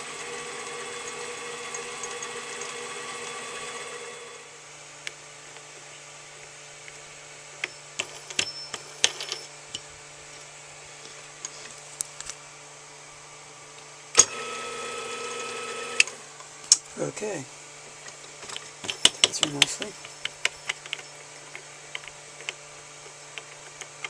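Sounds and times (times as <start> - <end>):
lathe motor running: 0.0 - 4.6, 14.2 - 16.3.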